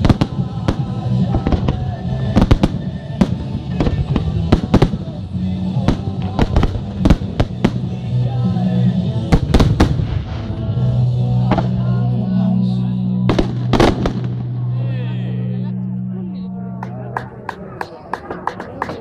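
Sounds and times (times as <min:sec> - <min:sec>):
fireworks bangs: 0:00.0 - 0:08.2, 0:09.2 - 0:10.6, 0:13.3 - 0:14.6
music with low notes: 0:00.0 - 0:19.0.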